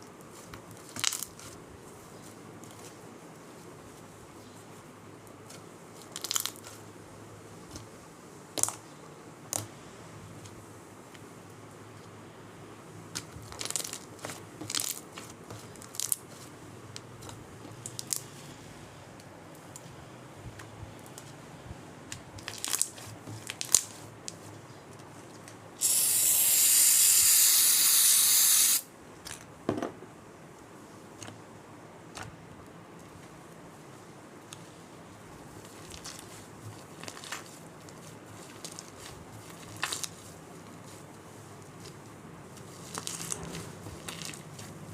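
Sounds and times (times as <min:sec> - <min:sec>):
slime crackling crunches: 0:13.2 - 0:16.3, 0:42.7 - 0:44.7
aerosol can spraying: 0:25.8 - 0:28.9.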